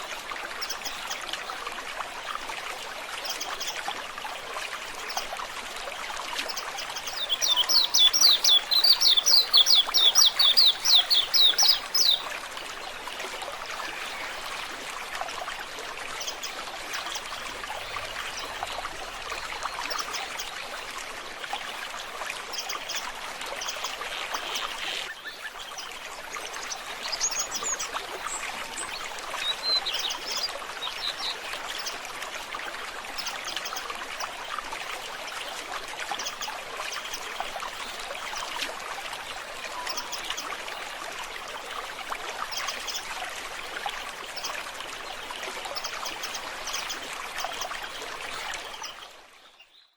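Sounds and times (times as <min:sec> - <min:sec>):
water trickling: 0:00.0 - 0:49.6.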